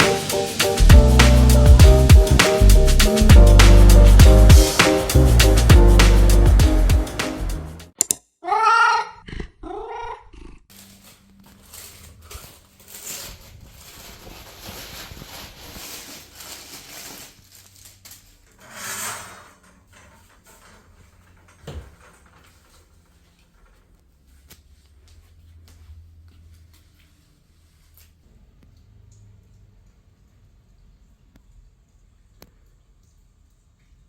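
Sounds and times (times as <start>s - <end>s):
background music with drums and bass: 0.0s - 7.9s
cat meowing: 8.4s - 10.3s.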